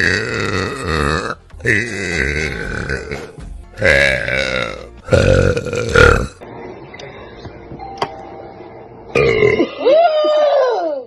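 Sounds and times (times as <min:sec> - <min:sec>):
woman burping: 0:00.0 - 0:06.4, 0:09.2 - 0:09.9.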